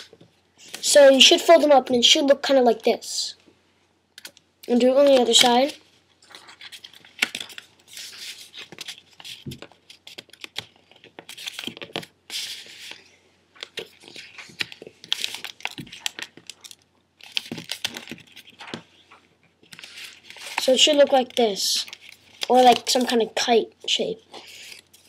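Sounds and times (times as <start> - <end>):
paper crinkling: 5.0 - 23.5.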